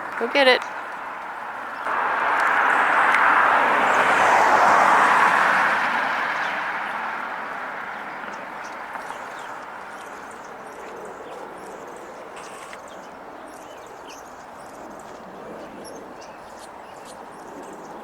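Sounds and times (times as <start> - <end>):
vehicle passing: 0.0 - 18.0
small birds chirping: 7.4 - 18.0.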